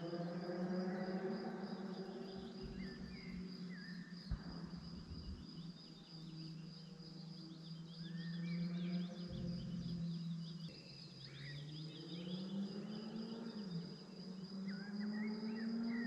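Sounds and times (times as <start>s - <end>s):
insects chirping: 0.0s - 16.0s
low steady hum: 2.1s - 11.1s.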